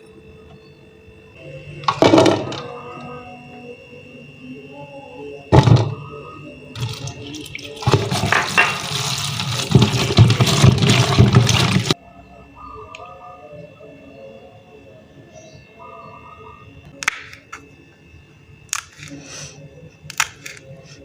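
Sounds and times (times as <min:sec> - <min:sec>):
water running from tap: 0:06.8 - 0:12.0.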